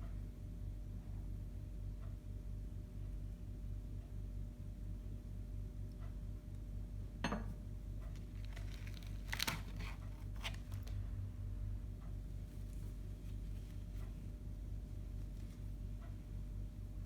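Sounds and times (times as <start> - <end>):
steady low hum: 0.0 - 17.0
wrapping crinkles and clicks: 8.0 - 11.0.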